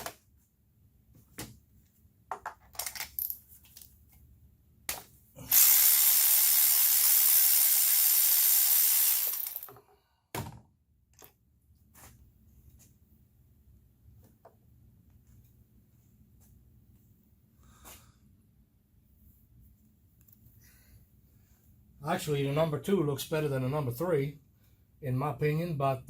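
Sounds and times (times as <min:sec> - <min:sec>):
tools and parts clicking: 0:02.3 - 0:04.0, 0:09.1 - 0:10.0
compressed air blow gun hissing: 0:05.4 - 0:09.6.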